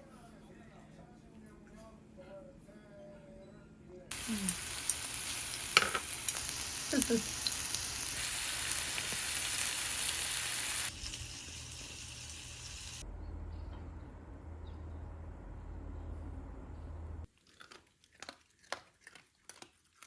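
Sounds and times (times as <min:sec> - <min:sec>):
food sizzling in a hot pan: 0:04.1 - 0:13.0.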